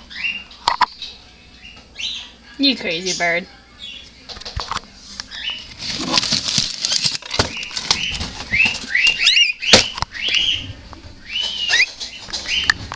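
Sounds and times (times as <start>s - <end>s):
clicks and scratching in cupboard: 5.7s - 9.3s
cockatiel chirping: 11.3s - 12.8s.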